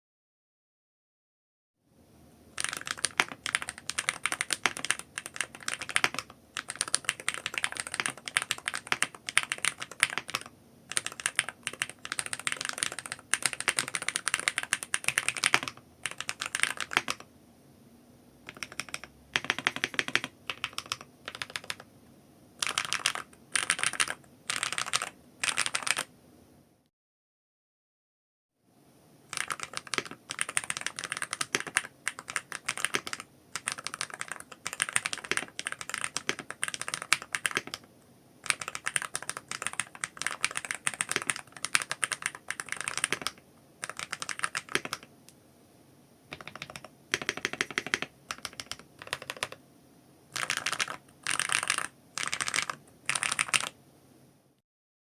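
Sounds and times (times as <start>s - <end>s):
keyboard typing clicks: 2.6s - 17.3s, 18.5s - 21.9s, 22.6s - 26.1s, 29.3s - 37.9s, 38.5s - 45.1s, 46.3s - 49.6s, 50.4s - 53.7s.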